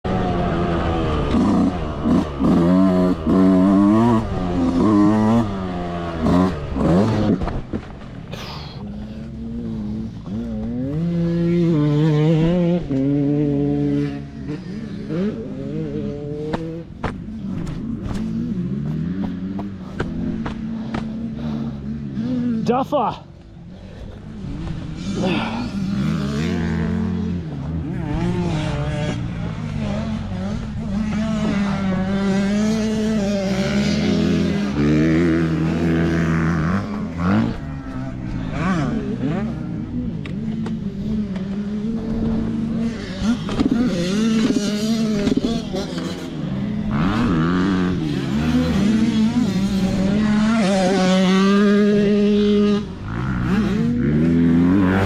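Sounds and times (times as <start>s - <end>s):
dirt bike engine revving: 0.1s - 7.5s, 8.8s - 23.1s, 23.7s - 55.0s.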